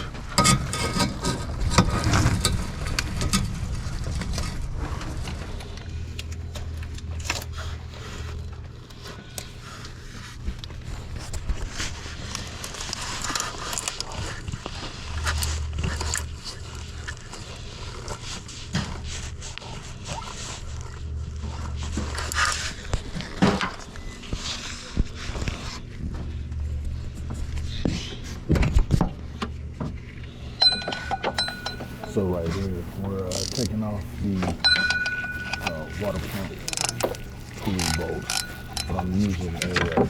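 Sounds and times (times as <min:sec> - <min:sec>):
low hum: 0:30.6 - 0:40.0
wrench clicking and scraping metal: 0:33.2 - 0:40.0.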